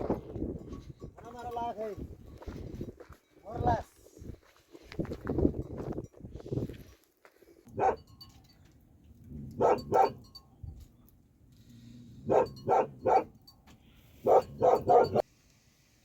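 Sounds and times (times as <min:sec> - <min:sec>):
dog barking: 0:07.8 - 0:08.0, 0:09.6 - 0:10.2, 0:12.3 - 0:13.4, 0:14.2 - 0:15.2.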